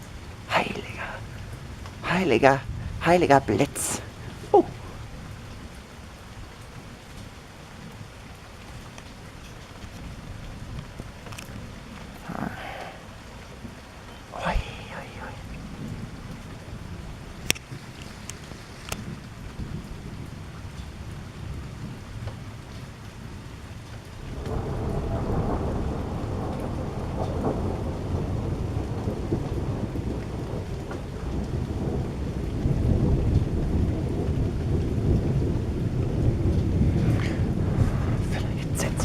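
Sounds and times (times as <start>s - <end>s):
deep thunder rolling: 0.0s - 3.1s, 24.3s - 39.0s
rain falling: 0.0s - 39.0s.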